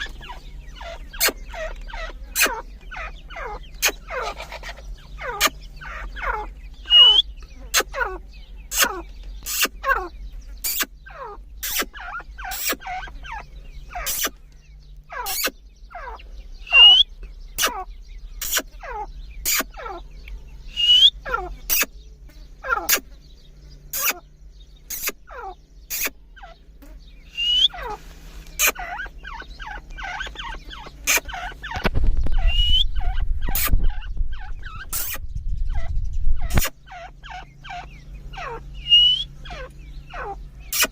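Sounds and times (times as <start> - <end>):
francolins calling: 0.0 - 40.9
low rumble: 29.4 - 40.7.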